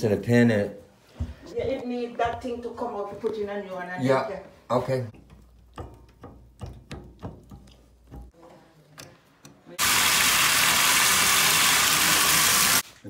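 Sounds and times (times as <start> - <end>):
water rushing from faucet: 9.8 - 12.8.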